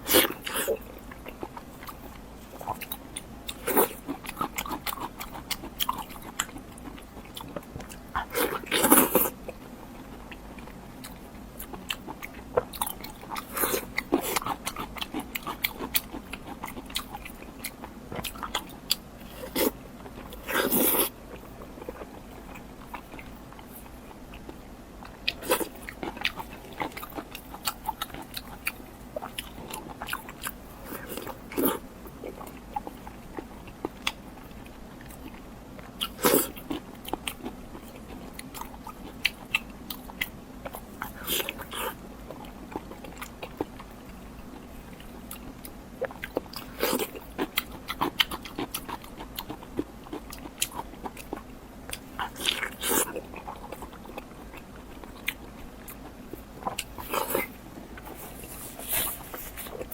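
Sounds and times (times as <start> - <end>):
person biting and chewing: 45.3 - 59.9.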